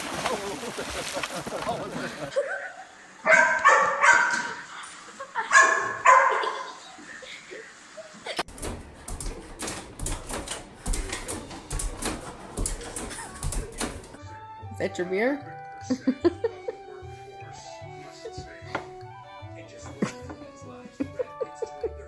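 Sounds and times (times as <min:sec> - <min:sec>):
dog barking drawn-out calls: 0:03.2 - 0:04.6, 0:05.5 - 0:06.6.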